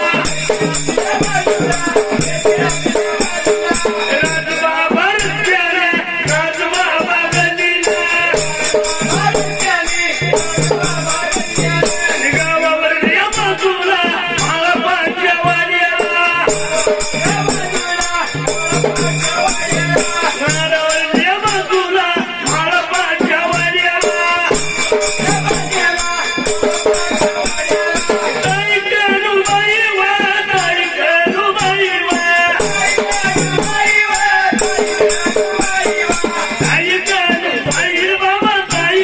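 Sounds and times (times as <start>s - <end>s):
jingling metallic percussion: 0.0s - 39.0s
low drum beat: 0.2s - 4.5s, 8.2s - 12.6s, 16.4s - 21.8s.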